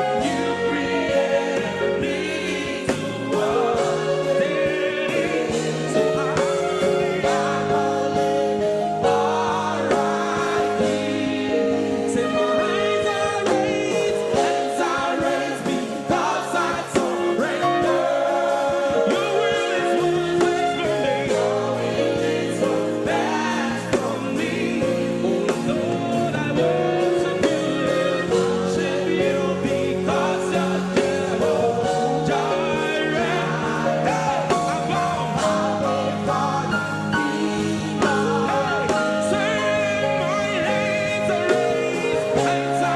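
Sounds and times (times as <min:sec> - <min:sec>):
instrumental backing: 0:00.0 - 0:42.9
people singing gospel: 0:00.0 - 0:42.9.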